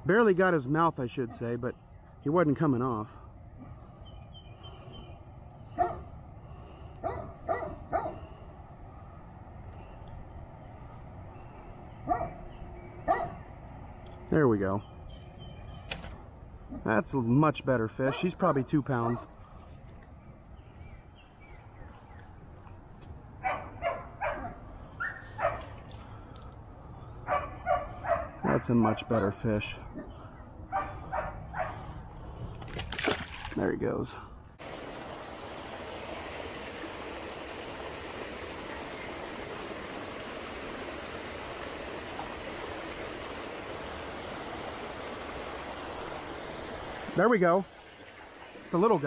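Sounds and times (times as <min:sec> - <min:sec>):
dog barking: 0:05.8 - 0:06.1, 0:07.0 - 0:08.2, 0:12.1 - 0:12.4, 0:13.1 - 0:13.4, 0:23.4 - 0:25.7, 0:27.3 - 0:29.4, 0:30.7 - 0:31.8.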